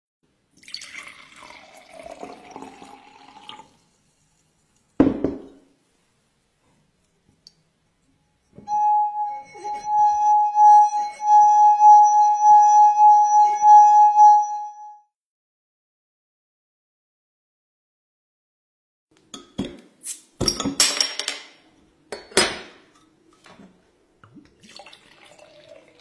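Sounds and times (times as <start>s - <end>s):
liquid and glass noise: 0.6s - 3.8s, 24.3s - 26.0s
glass ringing tone: 8.4s - 15.0s.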